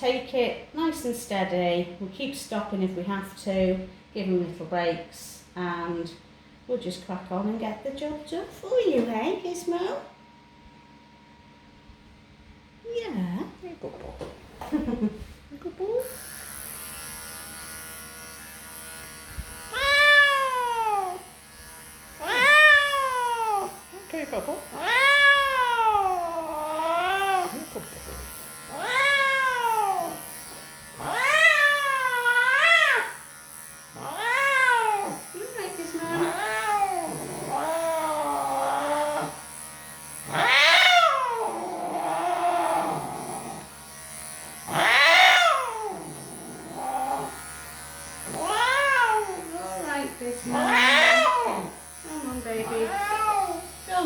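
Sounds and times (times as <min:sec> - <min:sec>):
electric clippers humming: 0:15.8 - 0:54.0
cat meowing: 0:19.8 - 0:21.2, 0:22.2 - 0:23.8, 0:24.7 - 0:27.5, 0:28.7 - 0:30.2, 0:31.0 - 0:33.2, 0:34.0 - 0:35.2, 0:36.0 - 0:39.3, 0:40.3 - 0:41.6, 0:44.7 - 0:46.0, 0:48.3 - 0:49.5, 0:50.5 - 0:51.7, 0:52.6 - 0:53.7
cat moaning softly: 0:22.2 - 0:23.8, 0:24.8 - 0:27.6, 0:50.5 - 0:51.8.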